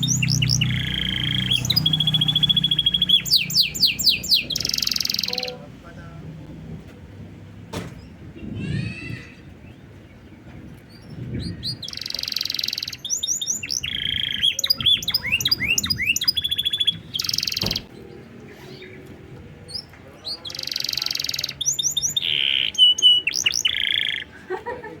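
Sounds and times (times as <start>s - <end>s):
canary singing trills: 0.0s - 5.8s, 10.9s - 24.4s.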